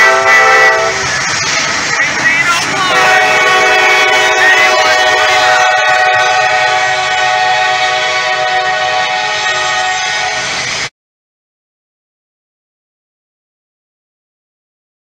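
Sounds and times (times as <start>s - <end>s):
locomotive air horn chord: 0.0s - 1.1s, 2.9s - 10.6s.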